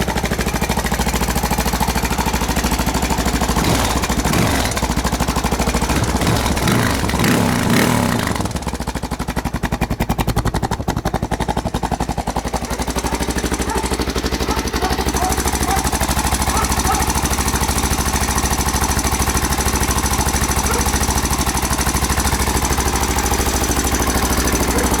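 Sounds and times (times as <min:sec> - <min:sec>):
engine idling with rattling clatter: 0:00.0 - 0:25.0.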